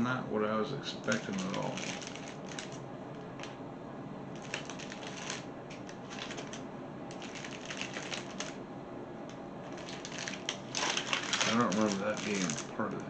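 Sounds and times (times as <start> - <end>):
packaging crinkling and rustling: 1.0 - 2.8, 4.3 - 8.6, 9.7 - 13.0.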